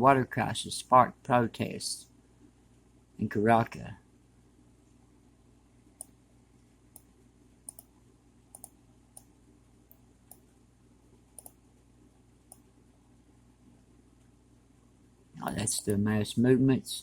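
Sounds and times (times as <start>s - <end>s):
faint low hum: 0.0s - 17.0s
computer mouse clicking: 6.9s - 7.1s, 7.7s - 7.9s, 8.5s - 10.5s, 11.3s - 11.6s, 12.4s - 12.7s.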